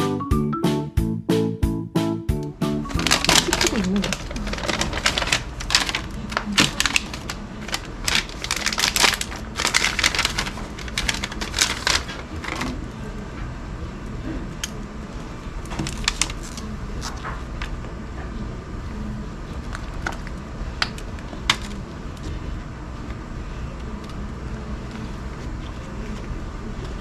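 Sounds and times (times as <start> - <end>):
sharp clicks and rustles: 2.9 - 12.8.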